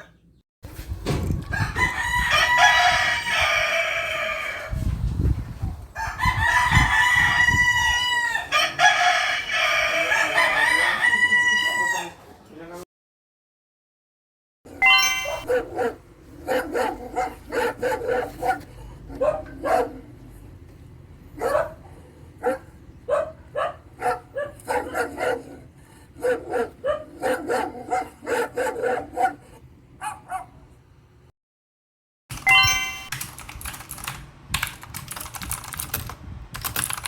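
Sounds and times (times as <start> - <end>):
dog barking: 15.2 - 20.1, 21.4 - 30.7.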